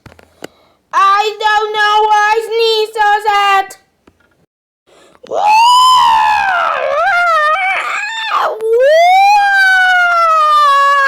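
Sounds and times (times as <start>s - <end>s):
cartoon character wailing cries: 5.3s - 11.0s.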